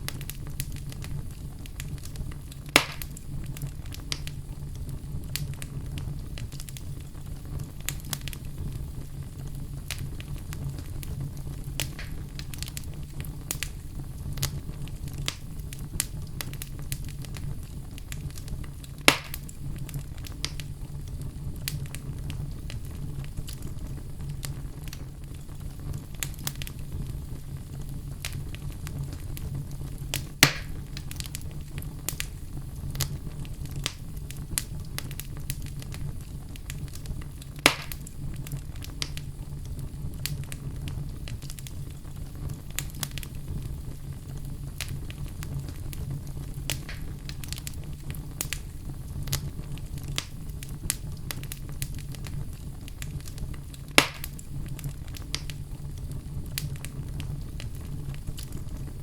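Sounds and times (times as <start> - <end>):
wood fire crackling: 0.0 - 59.0
sharp loud pops: 2.8 - 3.1, 19.1 - 19.4, 37.7 - 38.0, 54.0 - 54.3.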